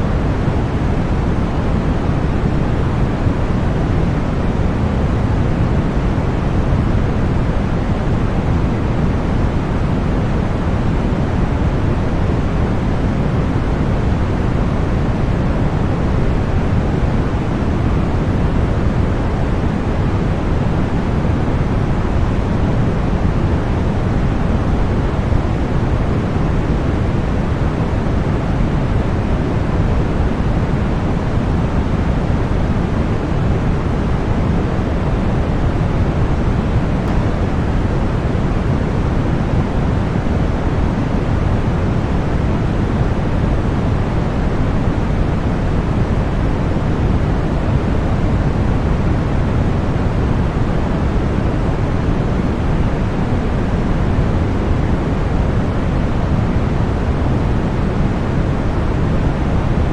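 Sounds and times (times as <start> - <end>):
white noise: 0.0 - 59.9.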